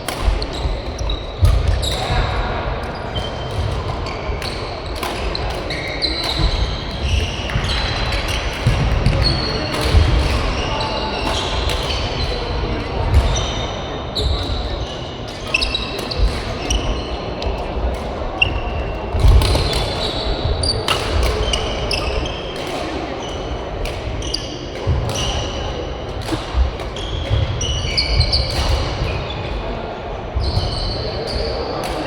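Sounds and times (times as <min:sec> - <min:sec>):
rackets hitting shuttlecock: 0:00.0 - 0:02.3, 0:03.2 - 0:12.5, 0:15.4 - 0:29.2
shoes squeaking on court: 0:02.9 - 0:12.2, 0:14.2 - 0:17.7.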